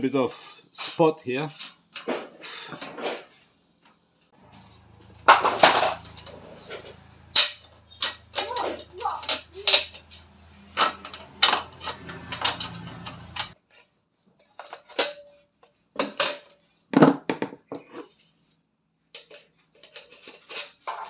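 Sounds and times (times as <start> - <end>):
hard objects clinking and knocking: 4.4 - 13.6.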